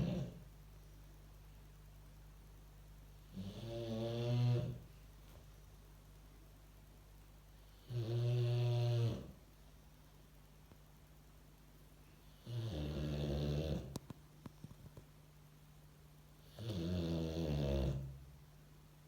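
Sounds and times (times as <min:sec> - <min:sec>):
dog snoring: 0:00.0 - 0:00.5, 0:03.3 - 0:04.9, 0:07.7 - 0:09.4, 0:12.2 - 0:14.0, 0:16.4 - 0:18.2.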